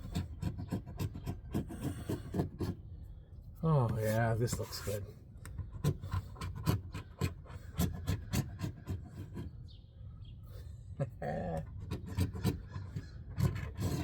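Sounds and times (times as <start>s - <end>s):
hand scraping adhesive: 0.0s - 2.9s, 3.8s - 9.6s, 11.5s - 14.0s.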